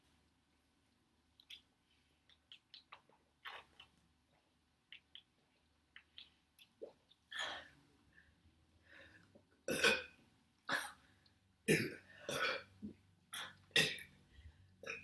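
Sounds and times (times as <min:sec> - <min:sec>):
woman burping: 0:09.7 - 0:10.1, 0:11.7 - 0:12.7.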